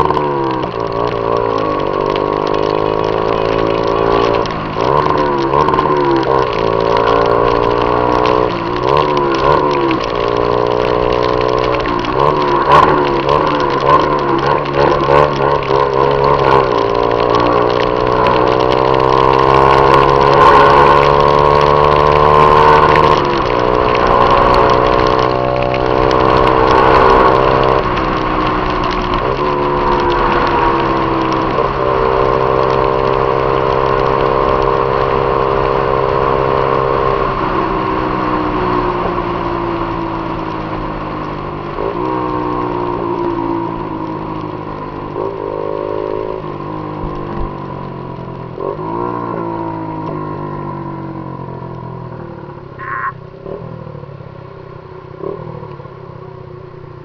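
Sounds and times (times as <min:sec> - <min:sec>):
motorcycle engine running: 0:00.0 - 0:57.0
wind and road noise: 0:00.0 - 0:57.0.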